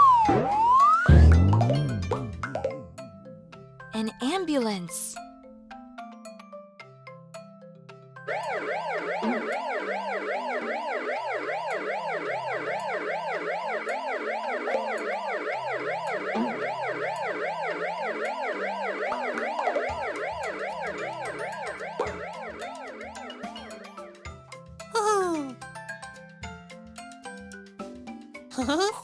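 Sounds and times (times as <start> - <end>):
cartoon siren wailing: 0.0 - 3.0, 8.3 - 20.2, 25.0 - 25.6
children's music bass line: 0.0 - 5.2, 25.0 - 25.6.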